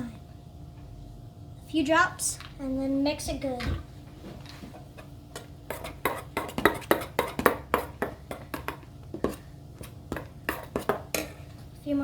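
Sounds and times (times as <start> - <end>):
spoon stirring slime in a bowl: 5.4 - 11.4.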